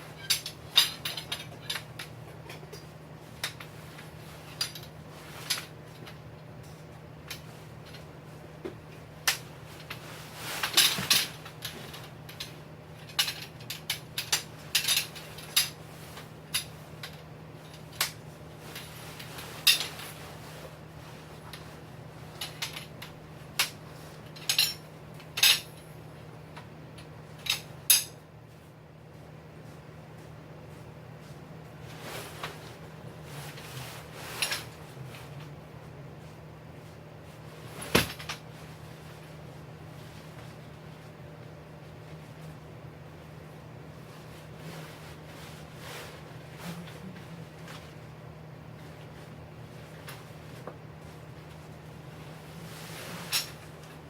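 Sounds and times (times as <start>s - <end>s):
steady low hum: 0.0s - 54.0s
metal tent poles clinking: 0.1s - 6.2s, 22.3s - 25.7s
scraping rustle: 9.7s - 12.2s, 31.2s - 35.6s, 44.0s - 48.0s, 48.8s - 54.0s.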